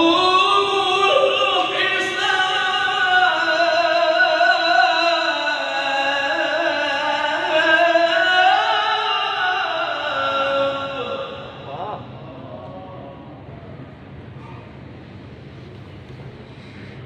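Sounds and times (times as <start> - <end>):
man reciting melodically: 0.0 - 12.5.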